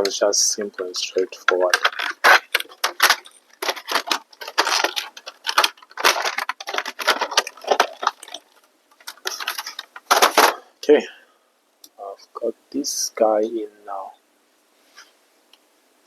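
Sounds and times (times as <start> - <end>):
plastic and metal parts clattering: 0.0 - 10.6.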